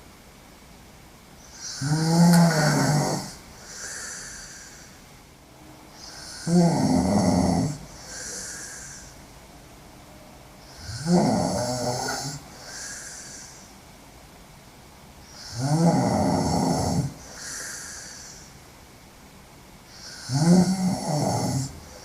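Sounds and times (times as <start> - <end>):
woman snoring: 1.5 - 5.0, 6.0 - 9.2, 10.7 - 13.7, 15.3 - 18.5, 19.9 - 22.0
breathy out-breath: 2.6 - 5.1, 7.9 - 9.2, 12.4 - 13.8, 17.2 - 18.6.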